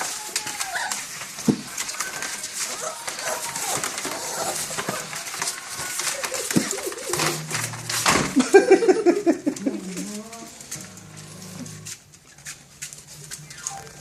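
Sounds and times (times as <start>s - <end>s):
puppies whimpering and yipping: 0.0s - 10.8s
clicks and scuffles: 0.0s - 14.0s.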